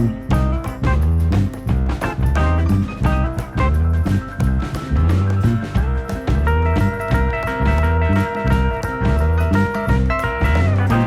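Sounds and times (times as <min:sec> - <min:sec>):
upbeat guitar music with drums: 0:00.0 - 0:11.0.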